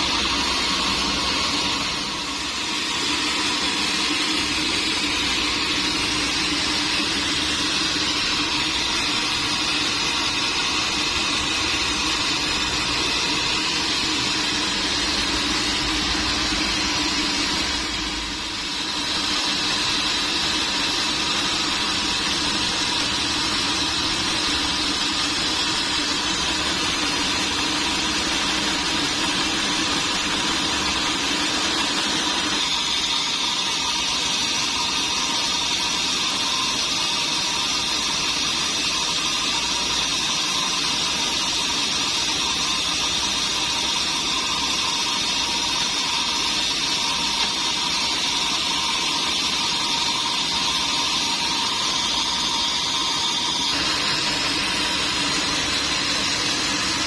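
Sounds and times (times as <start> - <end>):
sawmill machinery drone: 0.0 - 57.0.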